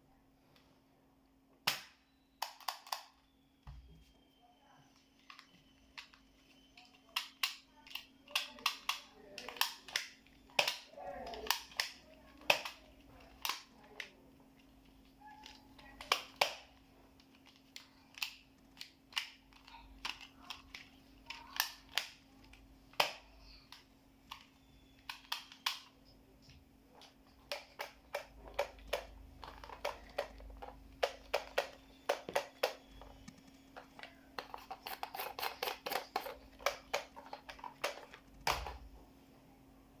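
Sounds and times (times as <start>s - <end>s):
faint steady hum: 0.0s - 40.0s
toy guns clicking: 1.7s - 3.2s, 6.8s - 14.1s, 17.4s - 22.2s, 23.0s - 25.9s, 27.0s - 38.8s.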